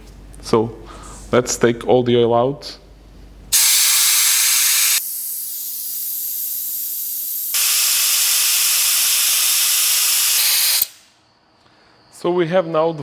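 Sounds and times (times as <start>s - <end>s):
vacuum brake bleeder hissing: 3.5s - 11.1s.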